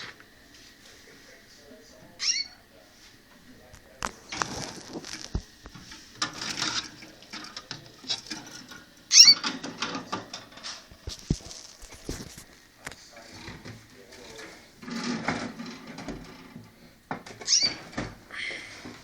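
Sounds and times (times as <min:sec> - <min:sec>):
canaries chirping: 0:02.2 - 0:02.6, 0:09.1 - 0:09.5, 0:17.4 - 0:17.9
rustling: 0:10.6 - 0:15.6.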